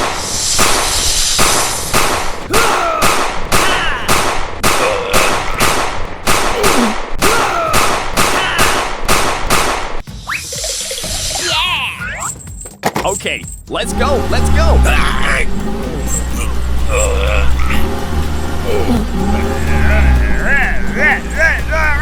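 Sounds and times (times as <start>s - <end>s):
rapid sharp cracks: 0.0s - 10.0s
squeaky cartoon-like vocal squeals: 11.3s - 12.4s, 16.1s - 17.9s.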